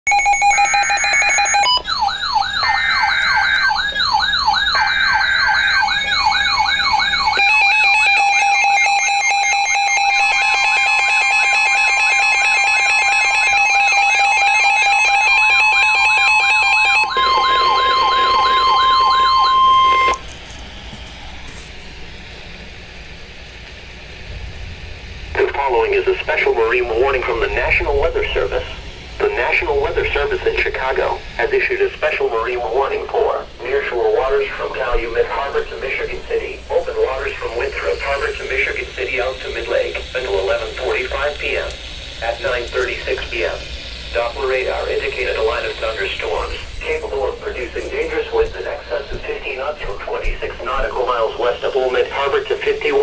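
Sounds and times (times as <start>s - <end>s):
steady attention tone: 0.0s - 53.0s
warbling and beeping tones: 0.1s - 20.2s, 33.7s - 53.0s
electronic siren tones sweeping: 0.1s - 21.3s, 33.6s - 53.0s.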